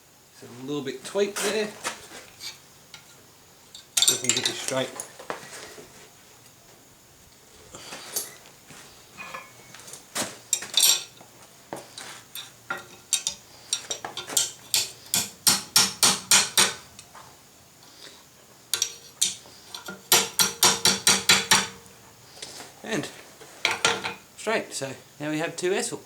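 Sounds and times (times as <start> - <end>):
hammer striking metal on anvil: 14.4 - 16.8, 20.1 - 21.8.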